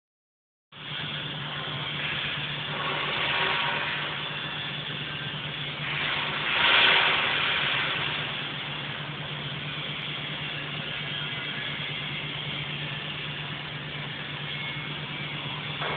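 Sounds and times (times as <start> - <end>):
welding machine hum: 0.8 - 15.9
welding hiss: 0.9 - 13.3.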